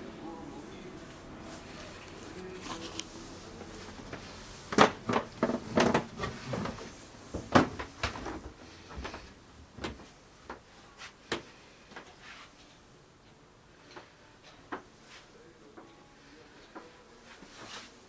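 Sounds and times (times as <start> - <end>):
cupboard doors knocking and clunking: 4.7 - 8.5.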